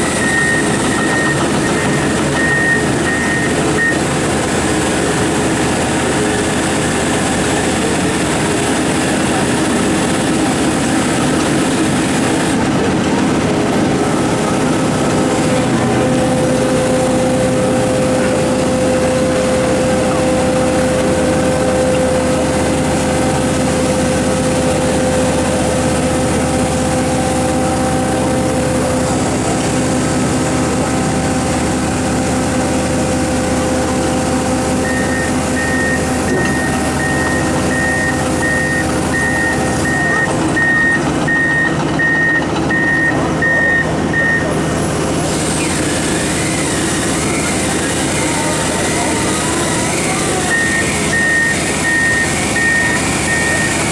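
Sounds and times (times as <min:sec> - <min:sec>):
warning alarm beeping: 0:00.0 - 0:04.2, 0:34.7 - 0:44.5, 0:50.0 - 0:53.9
excavator diesel engine running: 0:00.0 - 0:53.9.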